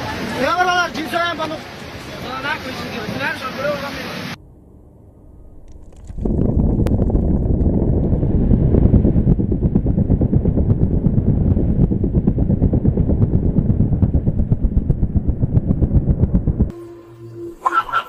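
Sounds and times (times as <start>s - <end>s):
wind buffeting microphone: 5.1s - 16.7s.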